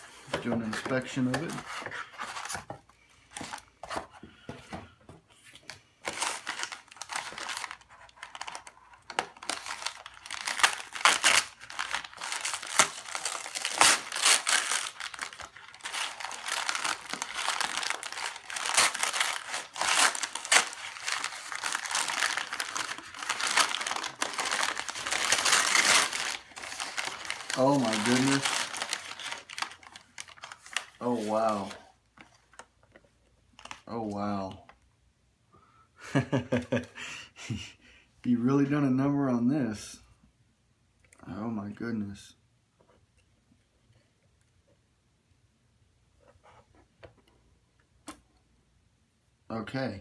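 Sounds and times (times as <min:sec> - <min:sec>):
package wrapping crinkling: 0:06.0 - 0:31.7.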